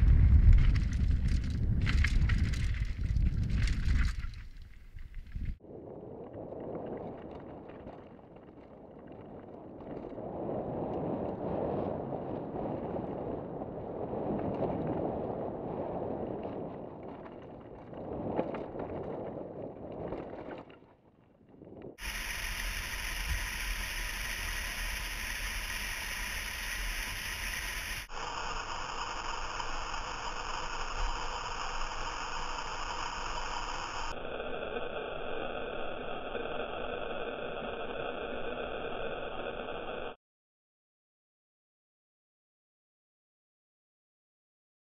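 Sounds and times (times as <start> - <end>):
wind rushing over microphone: 0.0 - 7.7, 9.7 - 20.4
bike tyre and trail rattle: 0.0 - 34.2.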